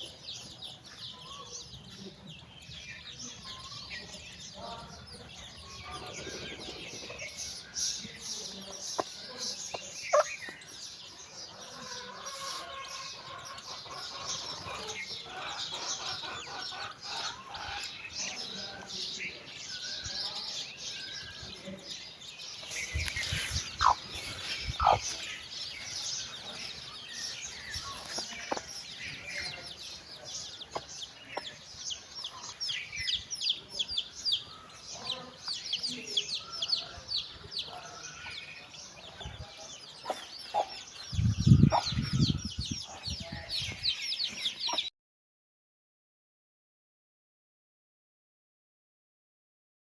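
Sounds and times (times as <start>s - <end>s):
chicks peeping: 0.0s - 44.9s
hen clucking: 11.8s - 18.2s, 22.6s - 33.2s, 39.1s - 43.3s.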